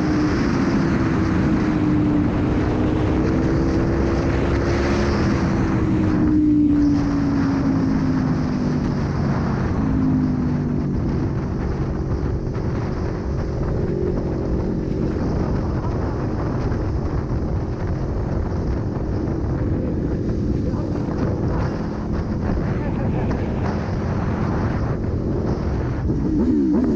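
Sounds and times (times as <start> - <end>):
motorcycle engine running: 0.0 - 26.9
wind noise on microphone: 0.0 - 26.9.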